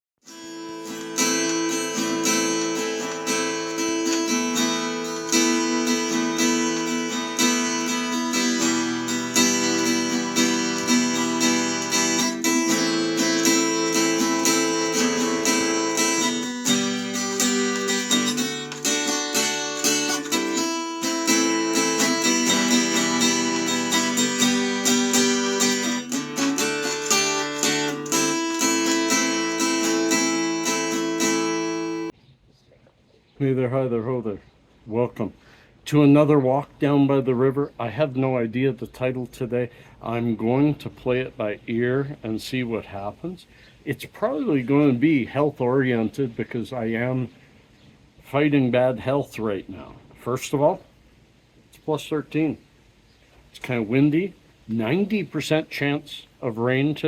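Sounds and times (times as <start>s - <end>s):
instrumental guitar music: 0.2s - 32.1s.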